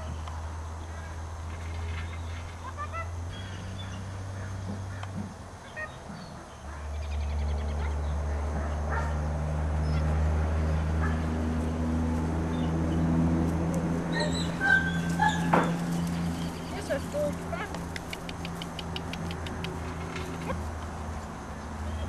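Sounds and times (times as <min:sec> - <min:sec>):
puppies yipping and whimpering: 0:14.1 - 0:17.3.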